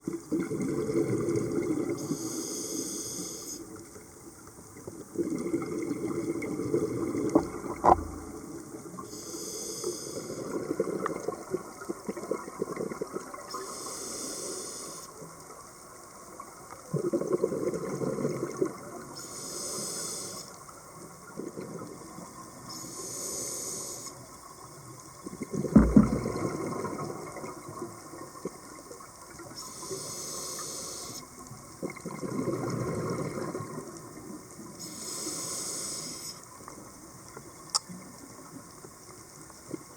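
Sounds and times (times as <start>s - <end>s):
exhaled bubbles rumbling: 0.1s - 2.0s, 5.1s - 9.0s, 25.2s - 28.8s, 31.8s - 34.0s
regulator inhalation hiss: 2.0s - 3.6s, 9.0s - 10.5s, 13.5s - 15.2s, 19.2s - 20.6s, 22.7s - 24.2s, 29.6s - 31.3s, 34.8s - 36.4s.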